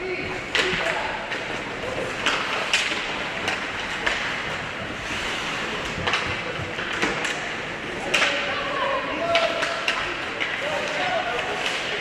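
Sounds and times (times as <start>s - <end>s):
arena noise: 0.0s - 12.0s
hockey sticks and puck knocking: 0.4s - 5.0s, 5.9s - 8.5s, 9.2s - 12.0s
skates hissing on ice: 4.9s - 6.0s.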